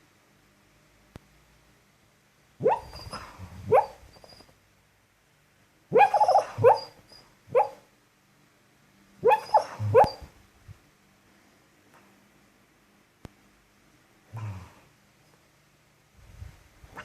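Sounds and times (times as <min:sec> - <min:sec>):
dog barking in sleep: 0:02.6 - 0:04.5, 0:05.9 - 0:07.9, 0:09.2 - 0:10.4.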